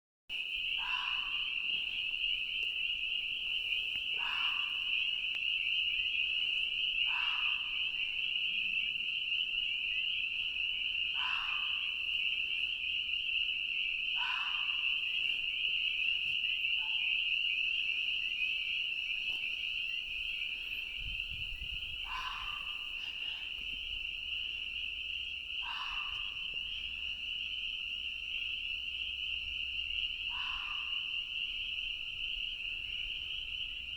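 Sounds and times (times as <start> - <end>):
chorus of frogs peeping: 0.3 - 33.9
animal yelling bark: 0.8 - 1.7, 4.1 - 5.0, 7.0 - 7.9, 11.1 - 12.0, 14.2 - 15.0, 22.0 - 23.0, 25.6 - 26.5, 30.3 - 31.1.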